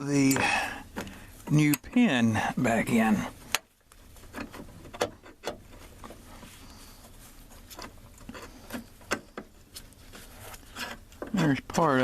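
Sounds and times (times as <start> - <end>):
rubbing: 4.1 - 11.5.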